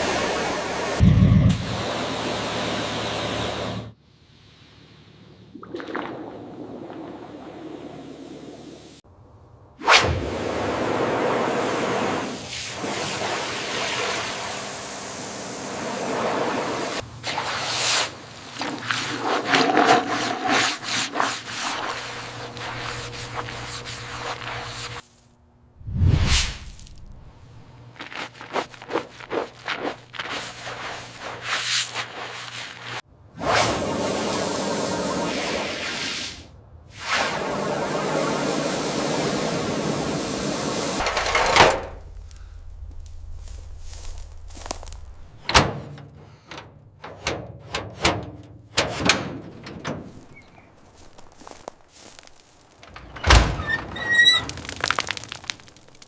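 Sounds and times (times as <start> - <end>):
short scraping strokes: 18.9 - 25.2, 28.0 - 33.0
long hiss: 35.0 - 41.2.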